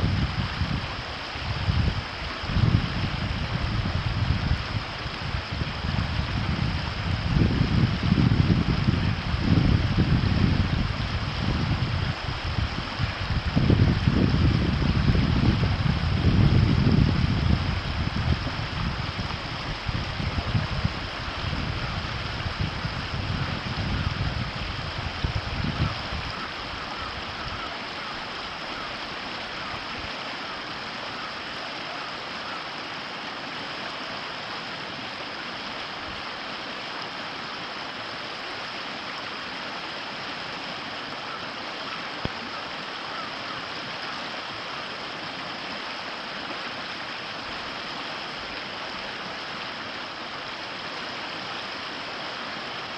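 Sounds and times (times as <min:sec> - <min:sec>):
wind gusts on microphone: 0:00.0 - 0:30.2
river water rushing: 0:00.0 - 0:52.9.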